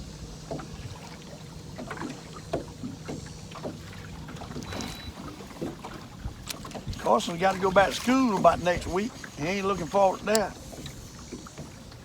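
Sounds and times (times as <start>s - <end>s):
water lapping against boat hull: 0.0s - 12.0s
small splashes: 0.5s - 12.0s.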